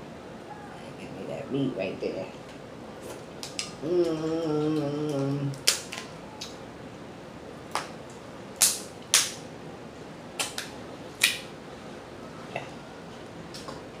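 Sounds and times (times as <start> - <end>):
crab shells cracking: 5.5 - 6.6.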